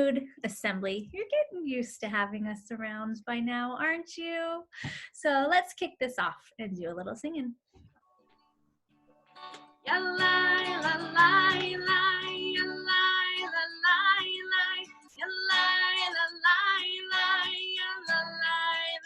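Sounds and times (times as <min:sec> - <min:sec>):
guitar accompaniment: 0:08.2 - 0:19.0
high voice singing: 0:09.9 - 0:19.0.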